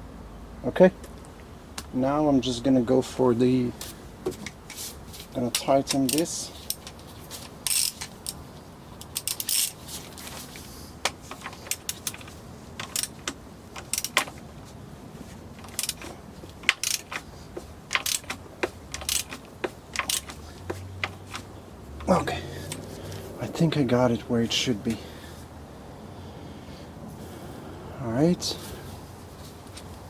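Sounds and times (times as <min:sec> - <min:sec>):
hand tools clicking on metal: 0:05.4 - 0:08.4, 0:09.0 - 0:14.4, 0:15.6 - 0:23.2.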